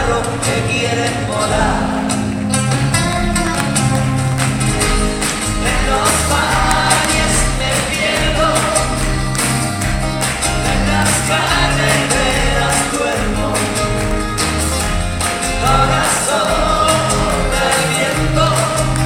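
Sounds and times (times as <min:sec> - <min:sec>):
live band music: 0:00.0 - 0:19.0
sustained bass line: 0:00.0 - 0:19.0
person singing: 0:05.5 - 0:09.3, 0:15.4 - 0:19.0.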